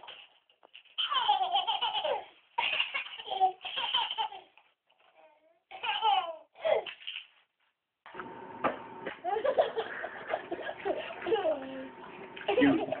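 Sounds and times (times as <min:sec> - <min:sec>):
baby laughing hysterically: 0:00.0 - 0:04.6, 0:05.7 - 0:07.3, 0:09.3 - 0:11.2.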